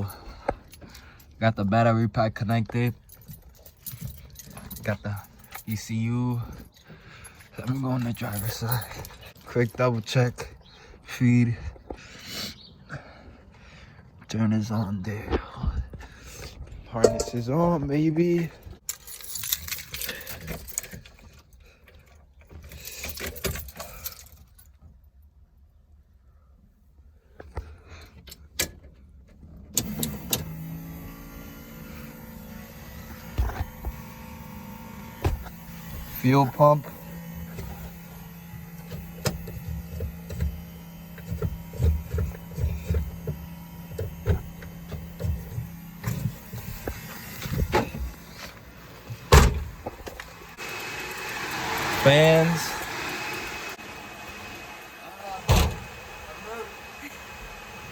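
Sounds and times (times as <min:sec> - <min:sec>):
small metal objects jingling: 0:02.9 - 0:09.6, 0:18.8 - 0:21.5
electric fuel pump humming: 0:29.7 - 0:57.9.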